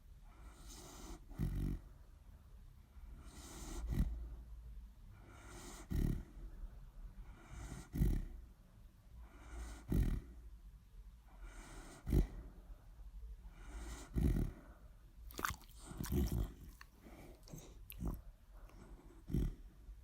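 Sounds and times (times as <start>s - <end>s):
dog snoring: 0.3s - 1.9s, 3.1s - 4.3s, 5.2s - 6.4s, 7.2s - 8.4s, 9.2s - 10.4s, 11.4s - 12.5s, 13.5s - 19.7s.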